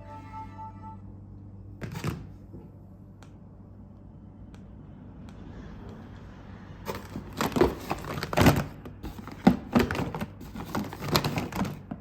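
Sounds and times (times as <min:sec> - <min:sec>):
rustling and clicking of handling: 0:06.9 - 0:12.0.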